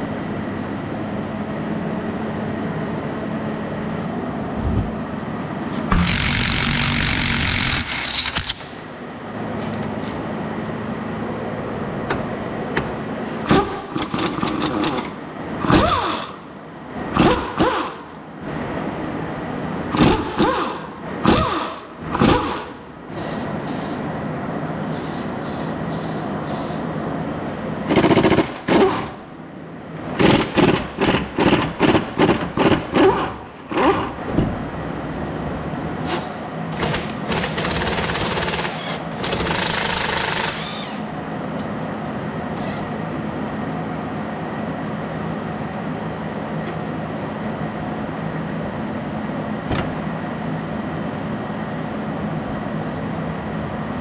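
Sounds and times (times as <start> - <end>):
mechanical hum: 0.0 - 54.0
pneumatic impact wrench bursts: 5.9 - 8.6, 13.4 - 16.4, 17.1 - 18.2, 19.9 - 24.0, 24.9 - 26.8, 27.9 - 29.2, 30.1 - 34.2, 36.1 - 41.1.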